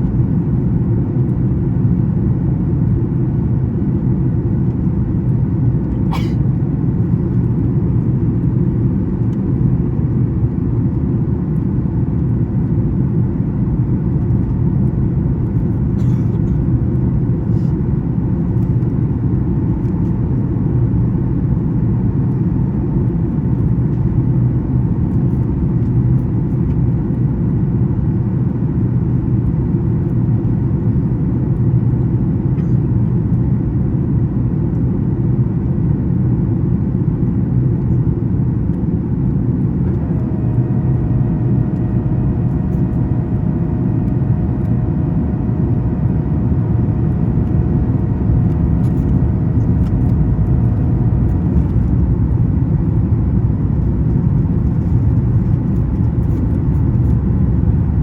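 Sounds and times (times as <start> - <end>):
jet engine drone: 0.0 - 58.0
steady whine: 36.8 - 58.0.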